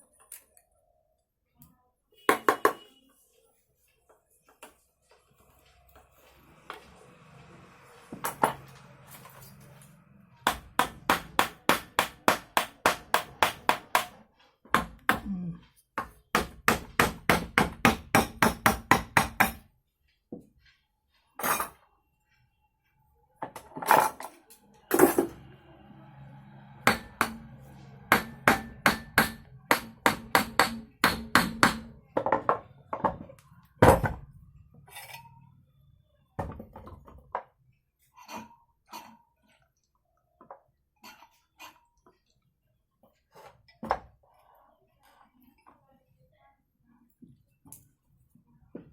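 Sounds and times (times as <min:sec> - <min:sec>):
hammer striking metal: 0:10.4 - 0:14.2, 0:26.3 - 0:32.0.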